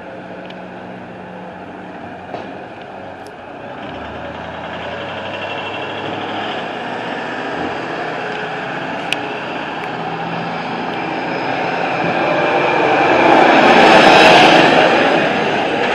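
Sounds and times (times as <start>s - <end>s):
vehicle engine rumble: 0.0s - 15.9s.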